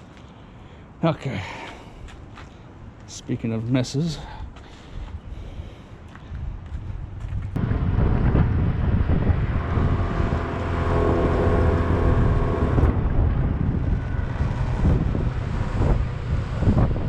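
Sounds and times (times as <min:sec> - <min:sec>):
wind buffeting microphone: 0:04.4 - 0:17.0
steady humming tone: 0:07.6 - 0:17.0.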